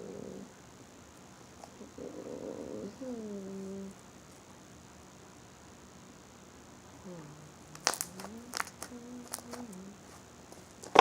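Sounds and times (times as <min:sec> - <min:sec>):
faint room hiss: 0:00.0 - 0:11.0.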